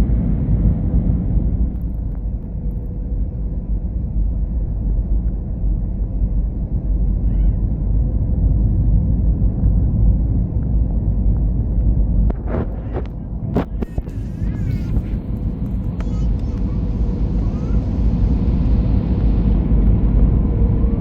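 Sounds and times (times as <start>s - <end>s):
airplane low rumble: 0.0s - 21.0s.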